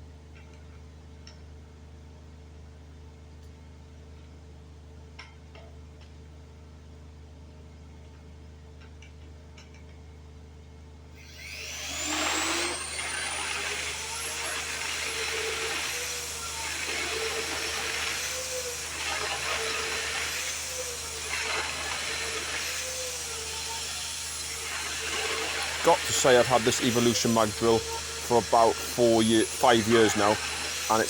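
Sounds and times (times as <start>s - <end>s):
drill cutting steel: 11.2s - 31.0s
magnetic drill motor whine: 11.2s - 31.0s.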